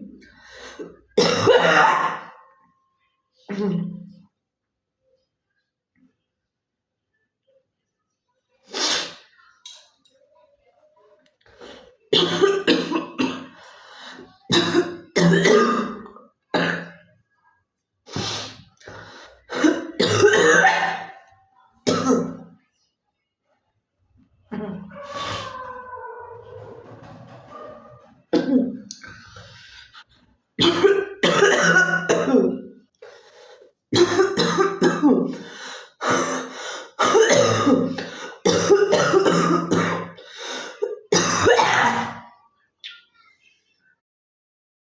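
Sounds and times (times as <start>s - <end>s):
girl coughing: 1.2s - 2.3s, 12.2s - 13.6s, 14.5s - 17.0s, 19.6s - 21.2s, 21.9s - 22.4s, 30.6s - 32.6s, 34.0s - 35.4s, 36.1s - 42.3s.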